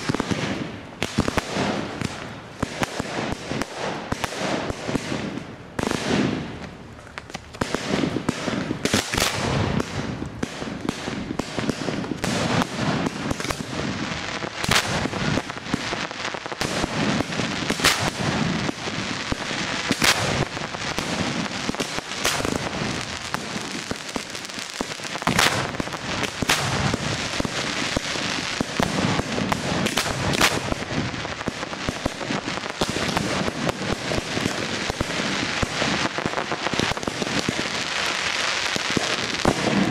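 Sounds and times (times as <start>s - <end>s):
fireworks bangs: 0.0s - 39.9s
fireworks crackling: 0.0s - 39.9s.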